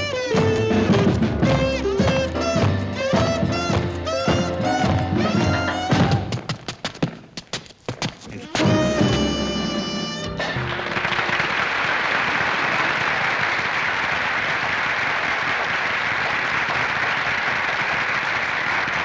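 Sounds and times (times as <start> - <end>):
audience applause: 9.1 - 19.0.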